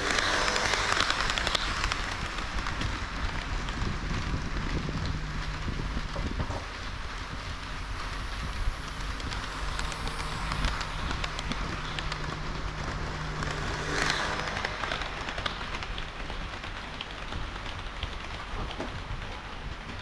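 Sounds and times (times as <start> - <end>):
model train wheel clicks: 0.0 - 3.9
loud rush: 0.0 - 19.8
low motor hum: 0.0 - 20.0.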